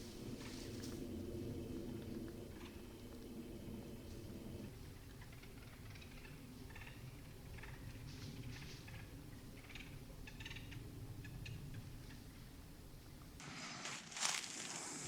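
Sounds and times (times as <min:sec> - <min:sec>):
footsteps crunching dry leaves: 0:13.4 - 0:15.0.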